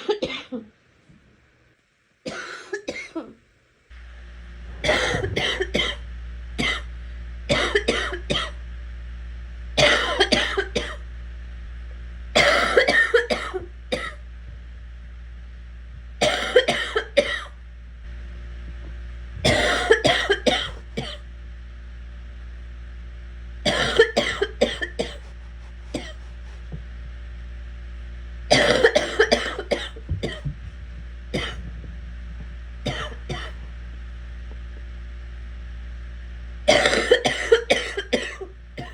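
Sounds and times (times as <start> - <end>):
person coughing in fits: 0.0 - 0.7, 2.3 - 3.4, 4.8 - 6.0, 6.6 - 6.9, 7.5 - 8.6, 9.8 - 11.0, 12.4 - 14.2, 16.2 - 17.6, 19.4 - 21.2, 23.7 - 26.2, 28.5 - 31.7, 32.9 - 33.6, 36.7 - 38.9.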